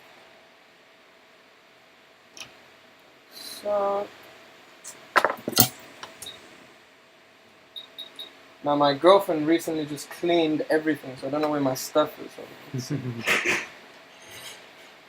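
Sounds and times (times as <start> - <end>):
metal tools clinking on workbench: 5.2 - 5.8.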